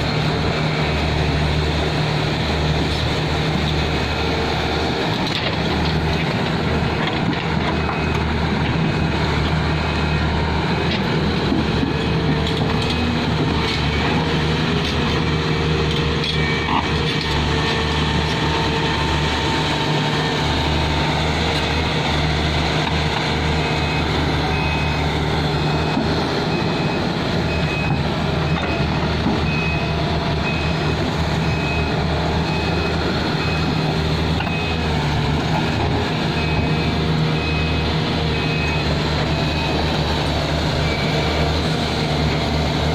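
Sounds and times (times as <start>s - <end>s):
excavator diesel engine running: 0.0s - 42.9s
repeating warning beep: 23.6s - 33.8s.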